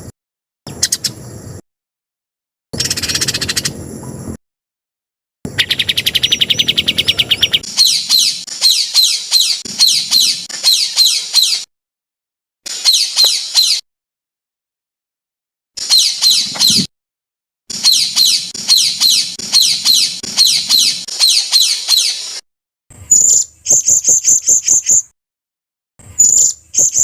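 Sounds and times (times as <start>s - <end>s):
bird piercing high notes: 5.6s - 11.7s, 17.7s - 22.4s.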